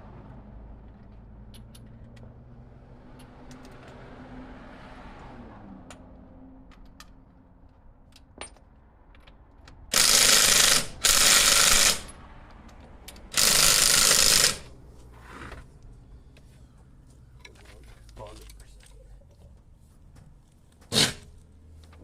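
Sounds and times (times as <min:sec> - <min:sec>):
impact wrench hammering: 0:09.9 - 0:12.2, 0:13.2 - 0:14.7.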